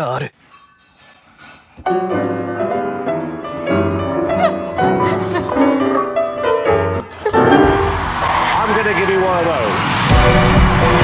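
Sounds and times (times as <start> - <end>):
piano background music: 1.9 - 8.0.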